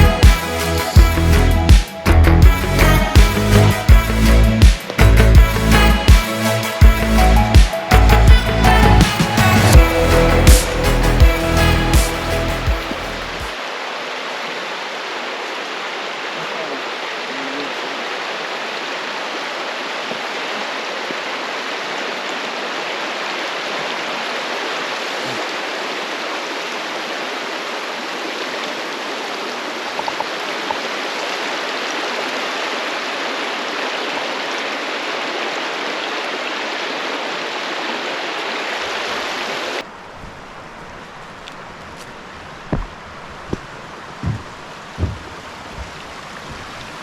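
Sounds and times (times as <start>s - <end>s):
rushing river water: 0.0s - 47.0s.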